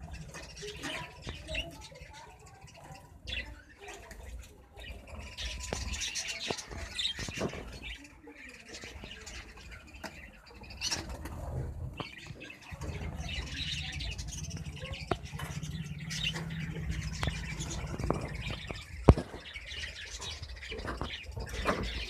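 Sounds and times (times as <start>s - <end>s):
small birds chirping and squawking: 0.0s - 22.0s
wings flapping: 10.8s - 22.0s.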